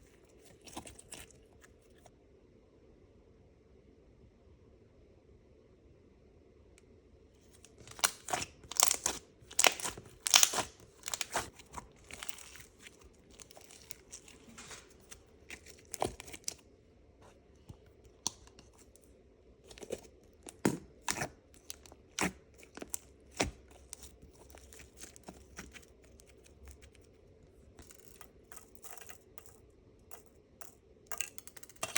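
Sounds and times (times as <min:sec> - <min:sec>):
slime crackling and popping: 0:07.7 - 0:16.6.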